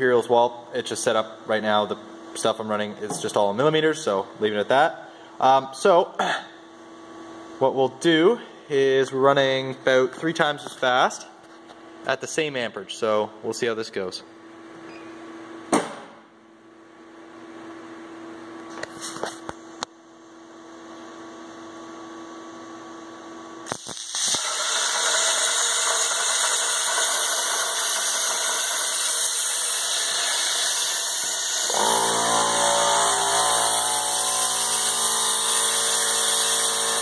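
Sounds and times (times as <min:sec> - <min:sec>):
plasma cutter hissing: 0:23.7 - 0:37.0
low buzzing hum: 0:31.6 - 0:37.0.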